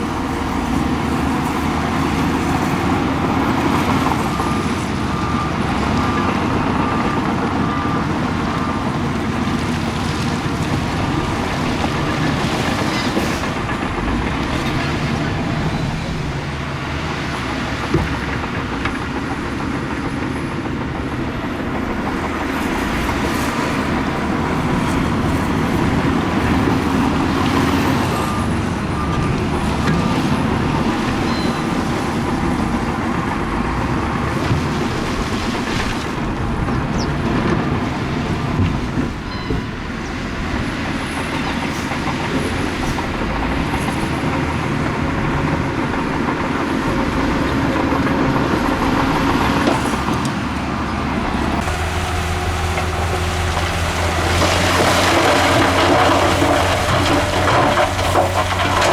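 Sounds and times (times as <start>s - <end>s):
heavy diesel machinery working: 0.0s - 58.9s
reversing alarm beeping: 0.1s - 20.5s, 21.1s - 34.3s, 39.2s - 40.1s.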